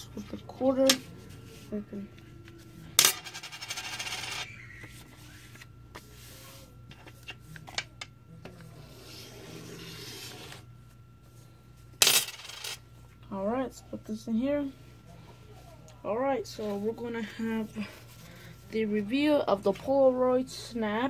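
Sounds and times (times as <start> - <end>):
coin clicking: 3.0 - 4.4, 12.0 - 12.8
coin scraping rattle: 3.0 - 4.5, 12.0 - 12.8.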